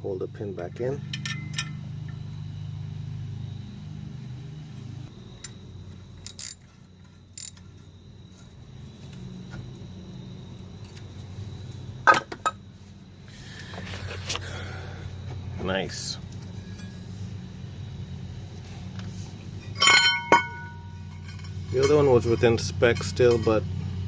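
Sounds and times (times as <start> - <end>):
steady low hum: 0.0 - 24.0
metallic clicks of hand tools: 6.2 - 6.6, 7.4 - 7.6.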